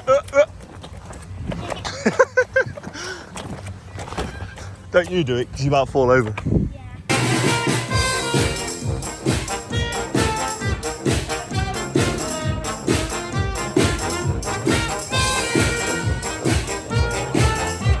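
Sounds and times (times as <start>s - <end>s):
brass band music: 7.1s - 18.0s.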